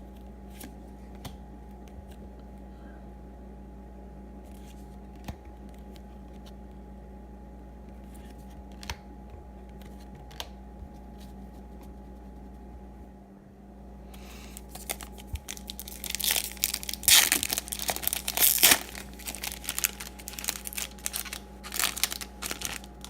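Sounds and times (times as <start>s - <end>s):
steady electrical hum: 0.0s - 23.0s
trading cards clicking and snapping: 14.5s - 23.0s.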